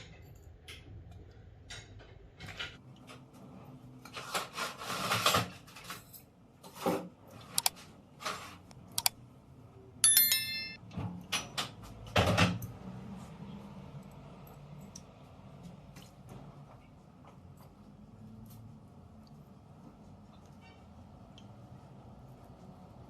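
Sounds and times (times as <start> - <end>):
ringing metallic clink: 10.0 - 10.8.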